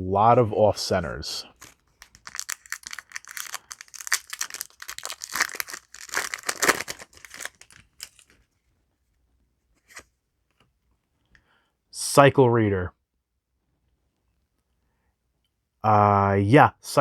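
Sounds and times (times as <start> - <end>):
foil pack crinkling and tearing: 1.6 - 8.4.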